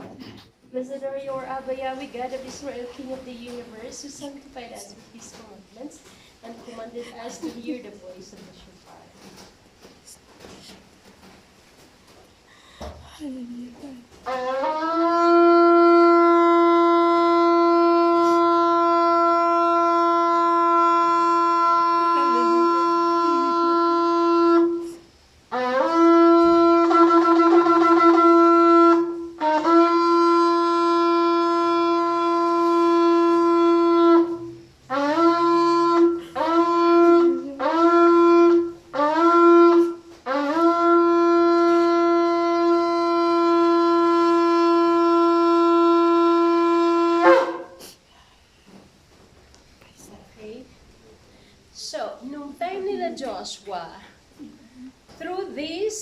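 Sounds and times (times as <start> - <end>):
shofar blasts: 14.2 - 48.0.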